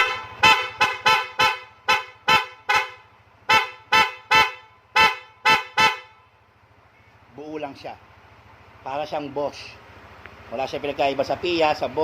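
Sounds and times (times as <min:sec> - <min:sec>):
scooter horn tooting: 0:00.0 - 0:06.4.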